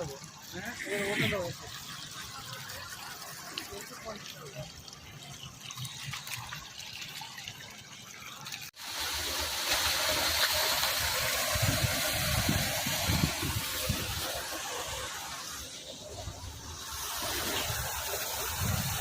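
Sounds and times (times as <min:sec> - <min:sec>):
floodwater rushing: 0:08.5 - 0:19.0.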